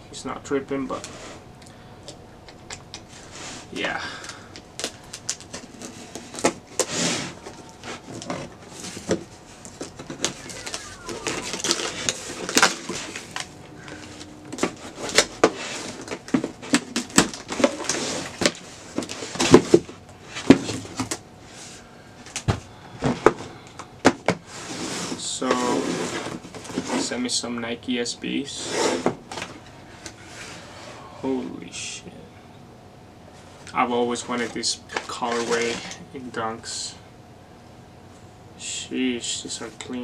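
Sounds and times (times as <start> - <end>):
package rustling and crinkling: 4.2 - 19.8.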